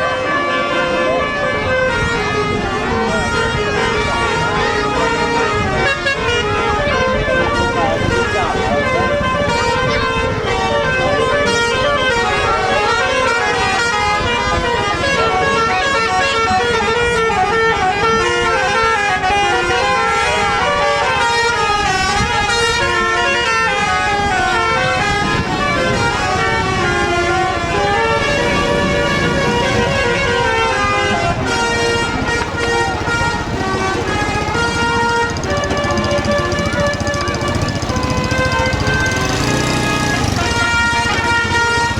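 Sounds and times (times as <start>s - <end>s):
air horns playing a tune: 0.0s - 41.9s.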